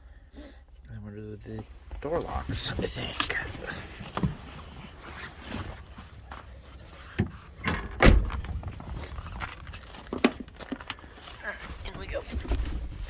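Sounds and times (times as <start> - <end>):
heavy door thump: 7.6 - 8.7.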